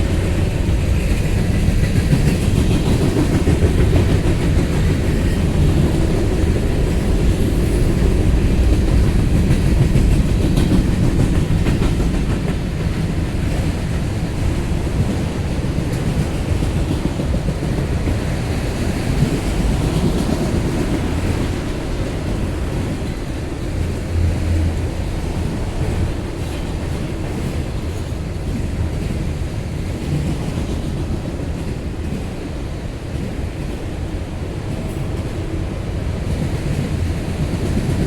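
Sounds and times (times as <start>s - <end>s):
train wheels rumbling on rail: 0.0s - 38.0s
wheels clicking on rail: 0.0s - 38.0s.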